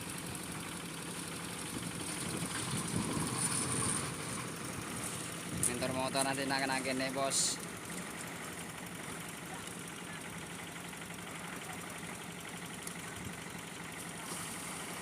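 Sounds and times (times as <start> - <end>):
small engine idling: 0.0 - 15.0.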